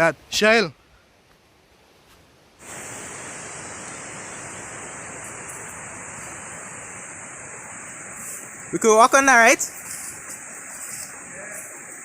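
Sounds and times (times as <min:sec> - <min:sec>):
high hiss: 0:02.0 - 0:12.0
river water flowing: 0:02.4 - 0:12.0.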